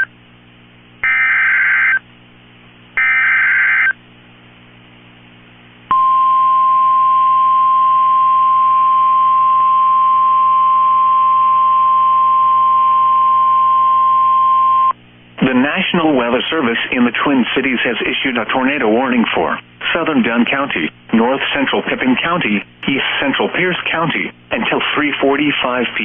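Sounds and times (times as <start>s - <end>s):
faint hum: 0.0s - 26.0s
steady warning alarm tone: 1.0s - 2.0s, 3.0s - 4.0s.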